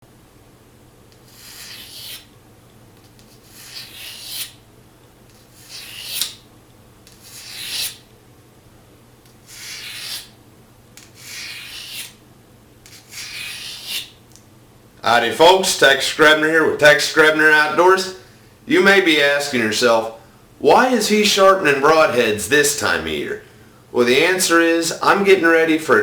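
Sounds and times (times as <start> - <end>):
blade sharpening strokes: 1.3 - 2.3.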